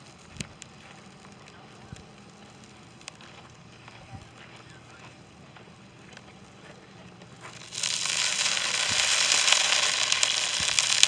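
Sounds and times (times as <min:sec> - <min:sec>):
loud sizzling with crackles: 0:00.0 - 0:11.0
broth pouring into pot: 0:07.5 - 0:11.0.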